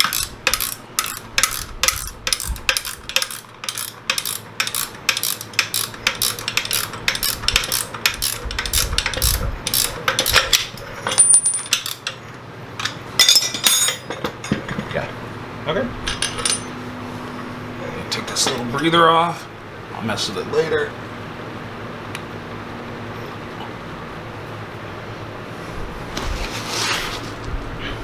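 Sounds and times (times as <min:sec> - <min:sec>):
hand tools clicking on metal: 0:00.0 - 0:12.2.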